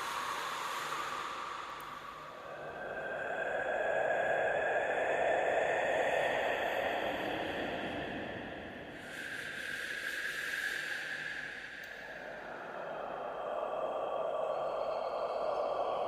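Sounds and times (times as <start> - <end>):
breathy hissing whisper: 0.0 - 16.0.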